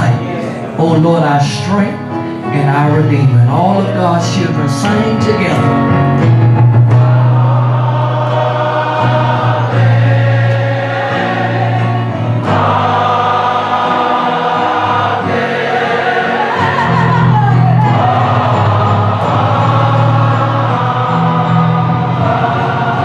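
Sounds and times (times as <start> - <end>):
gospel choir singing: 0.0 - 1.2, 5.3 - 23.0
instrumental accompaniment: 4.6 - 23.0.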